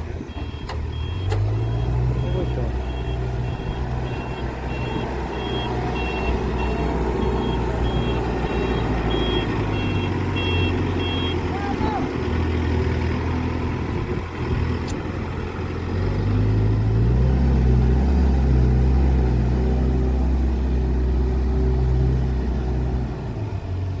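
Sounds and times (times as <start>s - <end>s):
backhoe diesel engine running: 0.0s - 24.0s.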